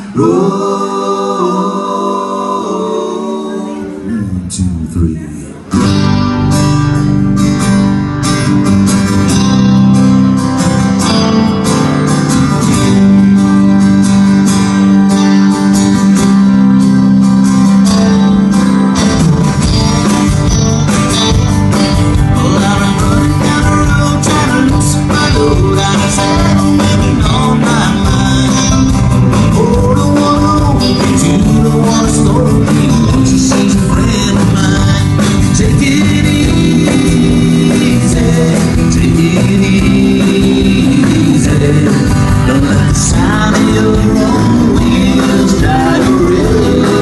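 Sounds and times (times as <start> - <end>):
voices singing: 0.0 - 4.6, 22.4 - 47.0
strummed acoustic guitars: 0.0 - 4.8, 5.5 - 47.0
live country-rock band: 0.0 - 47.0.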